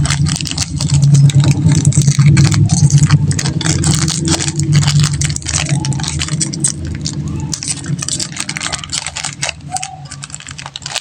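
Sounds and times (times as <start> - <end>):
plastic wrapper crinkling: 0.0 - 11.0
steady low hum: 0.0 - 11.0.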